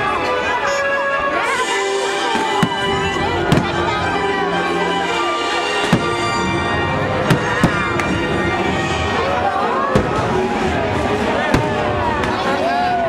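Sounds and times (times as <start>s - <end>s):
music playing: 0.0s - 13.0s
fireworks bangs: 2.3s - 4.1s, 5.6s - 9.0s, 9.9s - 12.6s.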